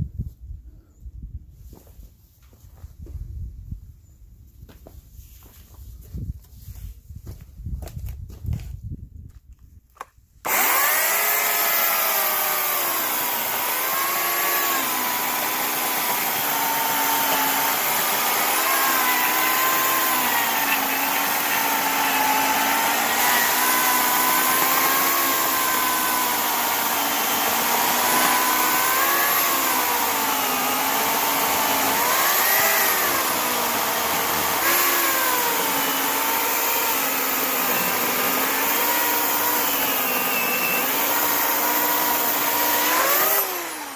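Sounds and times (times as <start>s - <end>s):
electric chainsaw motor whine: 10.4s - 43.9s.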